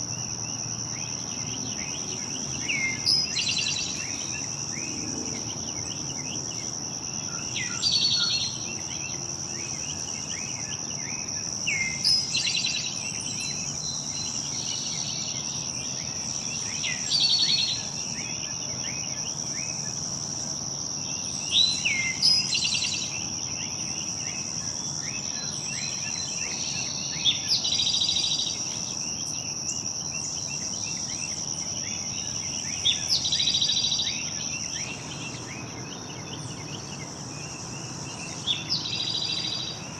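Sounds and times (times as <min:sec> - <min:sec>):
insects trilling: 0:00.0 - 0:39.9
songbird singing: 0:00.0 - 0:39.9.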